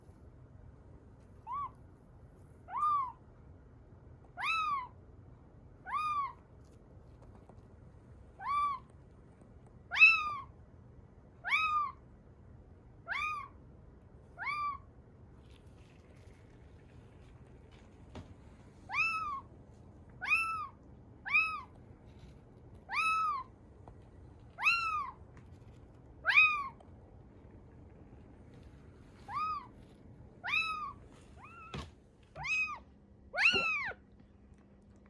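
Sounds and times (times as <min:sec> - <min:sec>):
kitten mewing: 0:01.4 - 0:01.7, 0:04.4 - 0:05.0, 0:05.8 - 0:06.4, 0:08.4 - 0:08.9, 0:09.9 - 0:10.5, 0:11.4 - 0:12.0, 0:13.1 - 0:13.6, 0:14.4 - 0:14.8, 0:18.9 - 0:19.5, 0:20.2 - 0:21.7, 0:24.6 - 0:25.2, 0:26.2 - 0:26.8, 0:29.2 - 0:29.8, 0:30.4 - 0:34.2.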